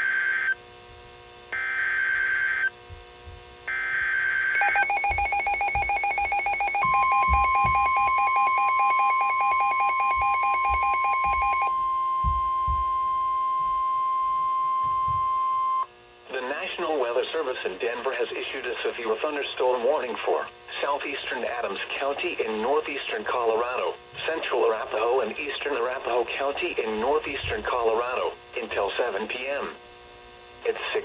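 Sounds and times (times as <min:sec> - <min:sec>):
screechy digital data bursts: 0:03.7 - 0:12.8
alarm beeping rapidly: 0:03.7 - 0:15.8
steady alert tone: 0:04.6 - 0:12.9.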